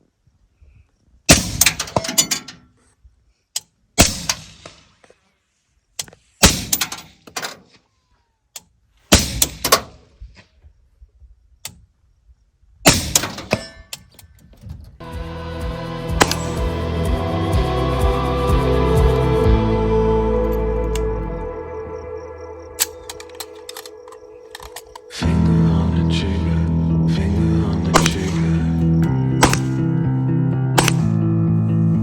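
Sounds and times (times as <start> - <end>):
rifle shots with echo: 9.1 - 9.9, 28.0 - 28.6, 29.4 - 29.8, 30.8 - 31.2
music: 15.0 - 32.0.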